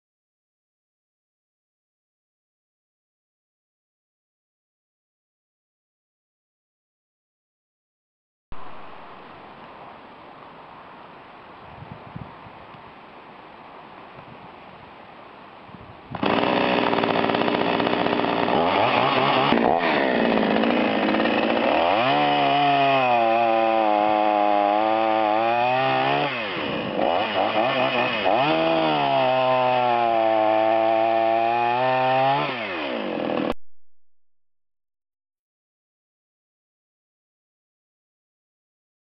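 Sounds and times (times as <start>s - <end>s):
chainsaw revving and cutting: 16.2s - 33.6s.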